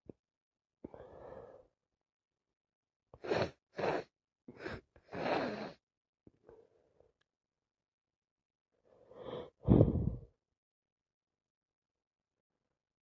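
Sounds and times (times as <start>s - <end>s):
woman gasping breath: 9.1s - 10.3s.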